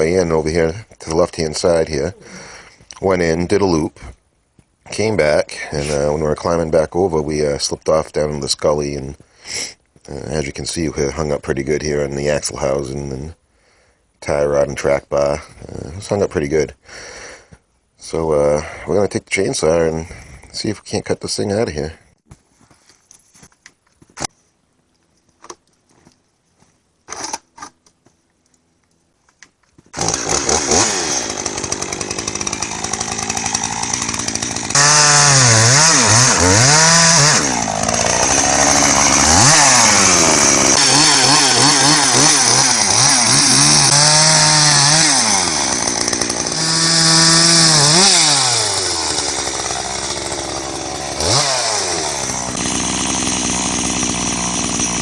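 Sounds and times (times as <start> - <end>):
chainsaw cutting wood: 27.1 - 27.8, 29.9 - 55.0.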